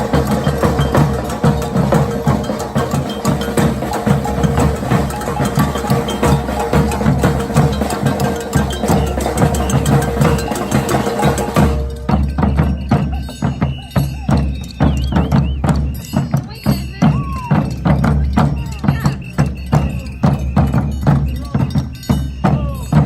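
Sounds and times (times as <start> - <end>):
drum hits: 0.0 - 22.0
street band playing: 0.0 - 23.0
high whistle-like tones: 4.9 - 23.0.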